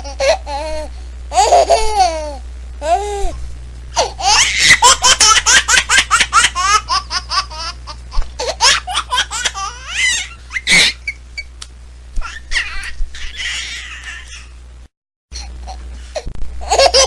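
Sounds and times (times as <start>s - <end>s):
baby laughing: 0.0s - 3.0s, 4.0s - 11.2s, 12.2s - 14.6s, 16.6s - 17.0s
baby squealing: 4.0s - 5.4s, 8.6s - 11.2s, 12.2s - 14.6s.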